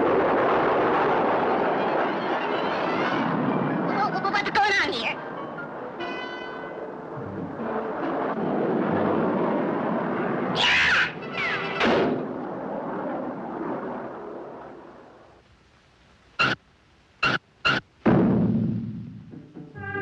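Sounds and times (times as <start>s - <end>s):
cartoon rumbling roar: 10.4s - 12.1s
falling whistle: 17.2s - 17.8s.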